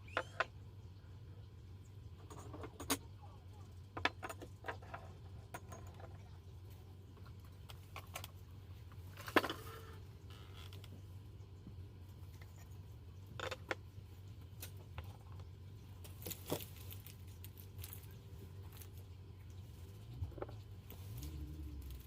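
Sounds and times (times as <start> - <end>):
low steady hum: 0.0 - 22.0
small hard objects clinking: 16.0 - 22.0.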